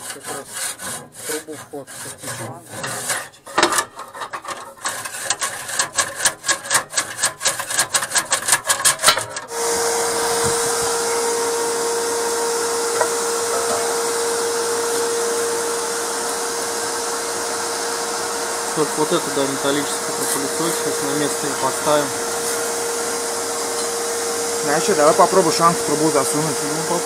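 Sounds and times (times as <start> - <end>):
scraping soot from flue: 0.0 - 27.0
vacuum cleaner humming: 9.5 - 27.0.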